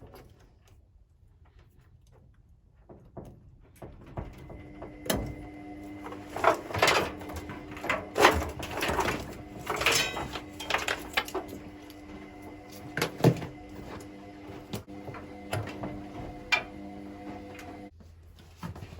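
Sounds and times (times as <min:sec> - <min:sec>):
washing machine parts clattering: 0:03.8 - 0:17.9.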